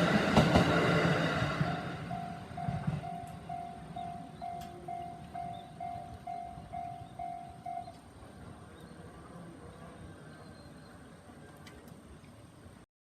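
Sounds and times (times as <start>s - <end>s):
train rumble: 0.0s - 12.8s
level crossing warning bell: 1.6s - 8.0s.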